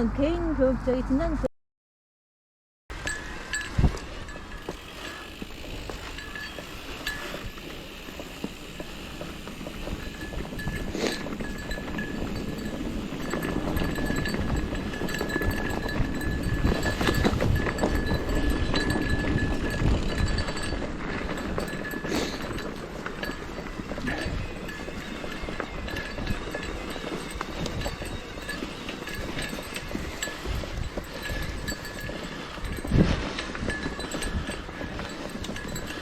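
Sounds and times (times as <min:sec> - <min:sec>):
bike tyre and wind rumble: 0:02.9 - 0:36.0
metallic ringing: 0:09.8 - 0:36.0.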